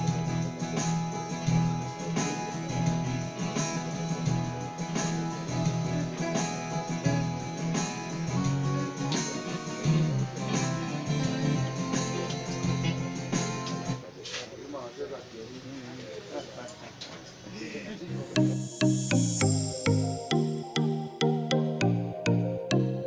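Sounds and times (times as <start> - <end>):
plucked guitar-like keyboard melody: 18.1 - 23.0
steady electronic beat: 18.1 - 23.0.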